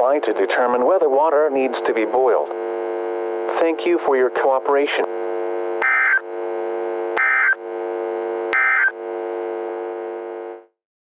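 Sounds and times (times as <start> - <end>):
droning background tone: 0.0 - 10.7
digital data tone bursts: 5.8 - 6.2, 7.2 - 7.6, 8.5 - 9.0.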